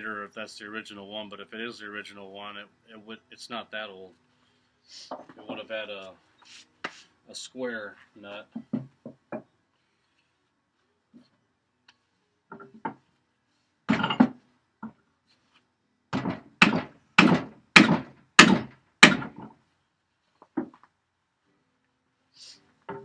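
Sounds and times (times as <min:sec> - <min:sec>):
hammer striking vise: 0:16.2 - 0:19.5.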